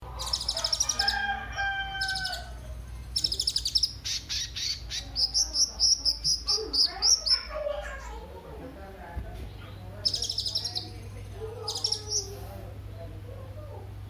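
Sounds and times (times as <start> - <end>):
bird singing high trills: 0.2 - 1.2, 1.9 - 7.5, 10.1 - 11.0, 11.6 - 12.4.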